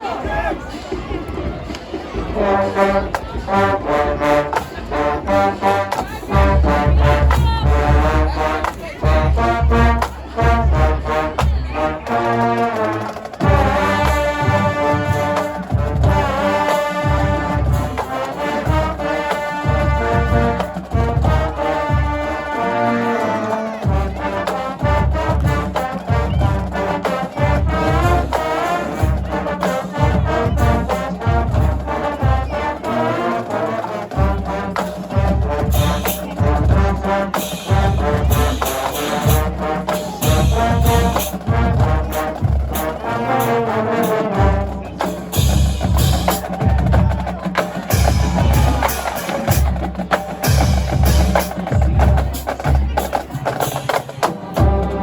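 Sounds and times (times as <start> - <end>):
brass band playing: 0.0 - 55.0
low drum beat: 0.2 - 12.8, 34.2 - 53.8, 54.4 - 55.0.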